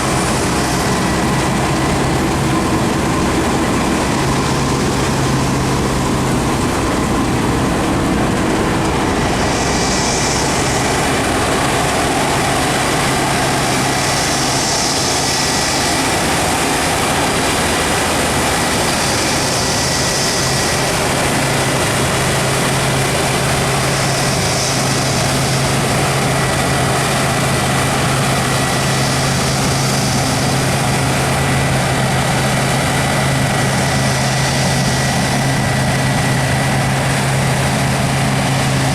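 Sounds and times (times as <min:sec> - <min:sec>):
combine harvester diesel drone: 0:00.0 - 0:38.9
harvester hiss: 0:00.0 - 0:38.9.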